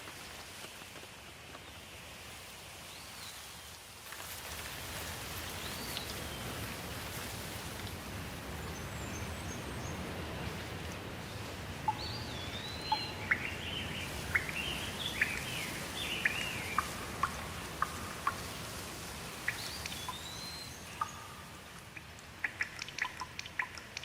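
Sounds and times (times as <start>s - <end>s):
steady rain: 0.0s - 24.0s
small birds chirping: 5.4s - 6.7s, 8.4s - 24.0s.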